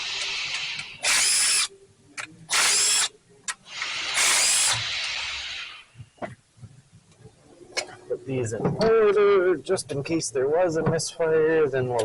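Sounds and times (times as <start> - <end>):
power tool motor whine: 0.0 - 1.7, 2.5 - 3.1, 3.7 - 5.8.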